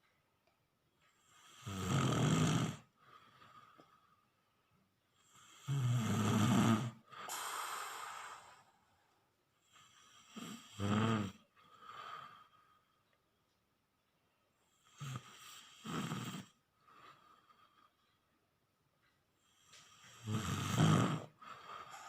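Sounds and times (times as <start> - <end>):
loud snores: 1.2 - 2.9, 5.2 - 8.7, 9.6 - 12.4, 14.8 - 16.6, 19.8 - 22.0
breathy exhale: 7.2 - 9.1, 21.5 - 22.0.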